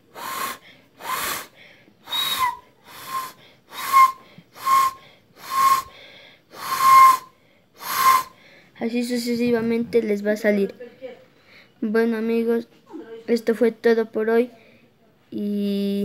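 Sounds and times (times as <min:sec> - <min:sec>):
hand-blown owl hoot whistles: 0:00.1 - 0:06.0, 0:06.6 - 0:08.4.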